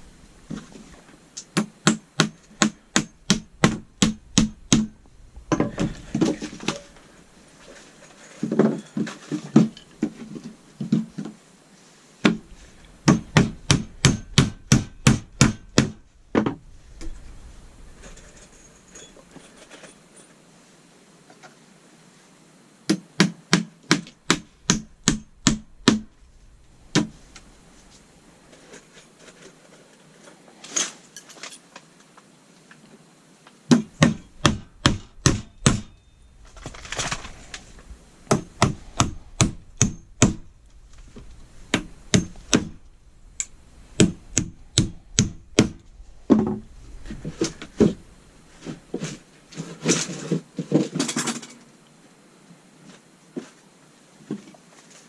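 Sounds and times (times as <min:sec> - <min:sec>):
hammer striking wood: 0:01.5 - 0:06.8, 0:12.2 - 0:16.6, 0:22.9 - 0:26.1, 0:26.9 - 0:27.2, 0:33.7 - 0:36.0, 0:38.3 - 0:40.5, 0:41.7 - 0:42.8, 0:44.0 - 0:46.6.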